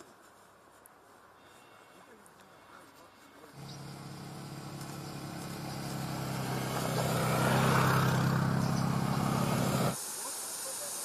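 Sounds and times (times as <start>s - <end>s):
vehicle engine running: 3.6s - 10.0s.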